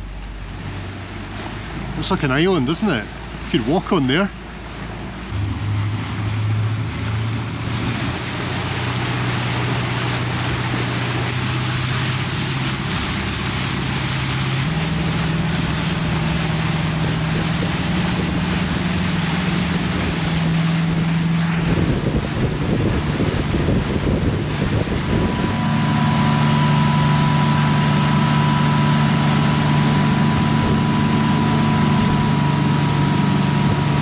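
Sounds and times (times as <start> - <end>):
motorboat engine: 0.0 - 34.0
rush of wind and water: 0.0 - 34.0.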